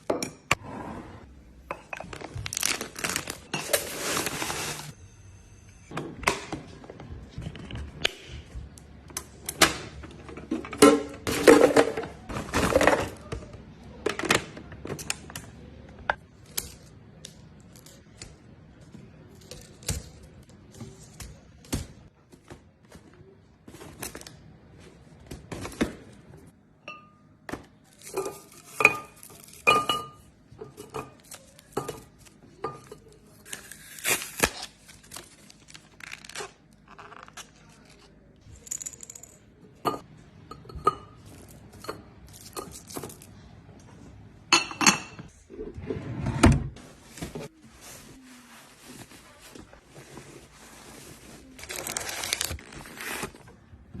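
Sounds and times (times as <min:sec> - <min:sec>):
glass jars clinking: 0:28.1 - 0:31.2.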